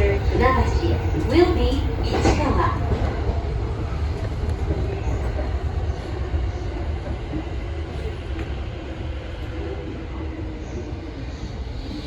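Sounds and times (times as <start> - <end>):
train wheels rumbling on track: 0.0 - 12.0.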